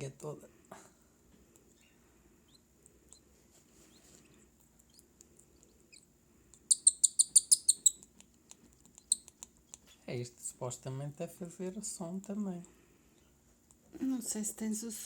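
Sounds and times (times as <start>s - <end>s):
chick chirping: 6.7s - 8.0s.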